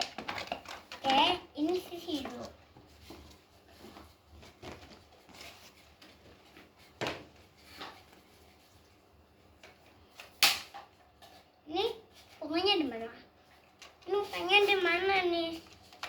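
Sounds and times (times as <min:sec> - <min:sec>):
plastic packaging rustling: 0:00.0 - 0:09.0.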